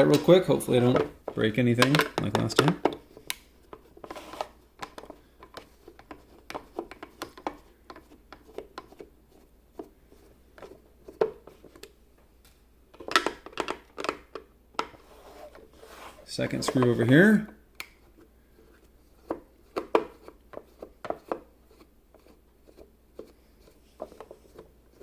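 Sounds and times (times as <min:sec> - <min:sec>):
plastic parts knocking: 0:00.0 - 0:09.1, 0:12.9 - 0:15.0.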